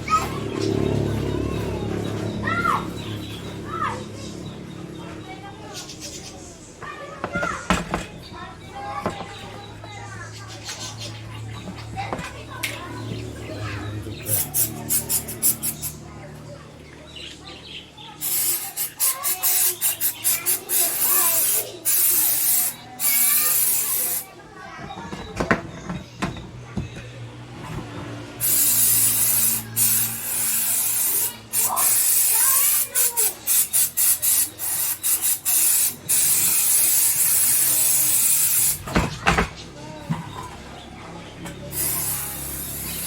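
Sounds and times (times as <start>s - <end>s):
liquid spraying in hissing bursts: 14.2s - 16.0s, 18.2s - 24.3s, 28.4s - 38.9s, 41.7s - 43.0s.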